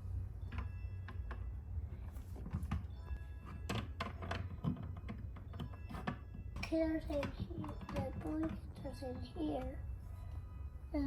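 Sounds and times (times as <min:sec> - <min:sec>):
faint background music: 0:00.0 - 0:11.0.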